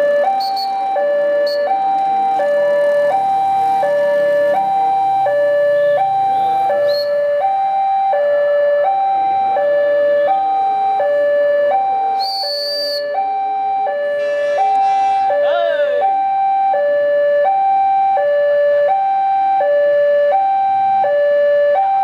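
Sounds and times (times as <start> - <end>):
level-crossing alarm two-tone: 0.0 - 22.0.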